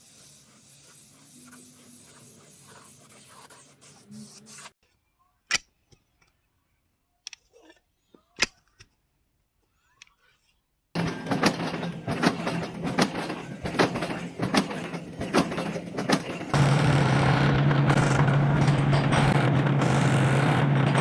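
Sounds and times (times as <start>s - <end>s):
machine hum: 11.0s - 21.0s
loud machine drone: 16.6s - 21.0s.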